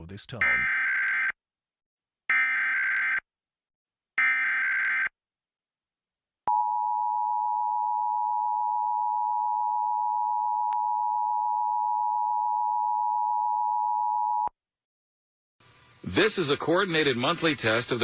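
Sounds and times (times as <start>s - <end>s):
dual-tone alarm: 0.4s - 1.4s, 2.3s - 3.2s, 4.2s - 5.1s, 6.5s - 14.5s.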